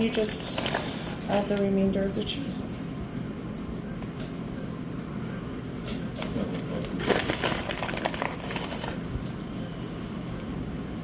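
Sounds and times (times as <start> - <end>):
plastic bag crinkling: 0.0 - 1.9, 6.0 - 9.4
steady low hum: 0.0 - 11.0.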